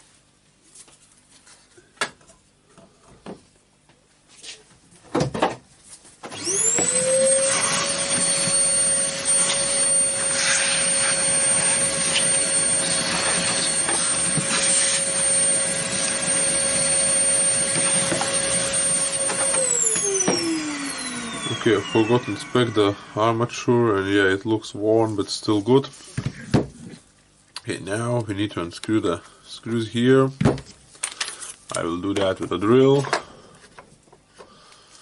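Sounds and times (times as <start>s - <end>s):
electric motor whining: 6.3s - 23.9s.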